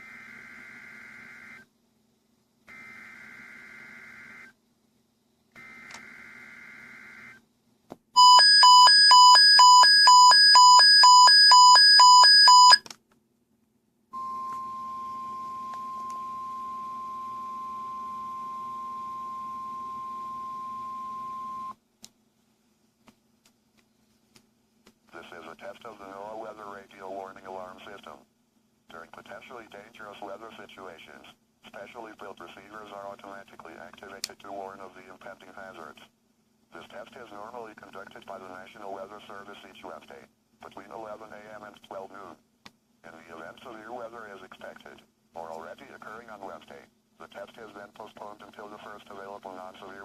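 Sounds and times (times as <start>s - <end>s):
steady alarm tone: 8.2s - 12.8s, 14.2s - 21.7s.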